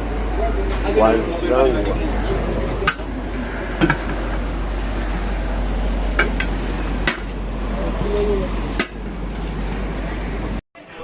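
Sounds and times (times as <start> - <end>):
road traffic rumble: 0.0 - 10.6.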